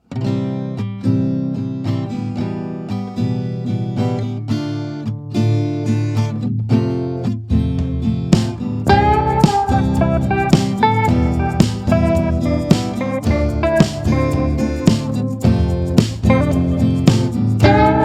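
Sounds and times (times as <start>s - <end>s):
plucked instrumental music: 7.6s - 18.0s.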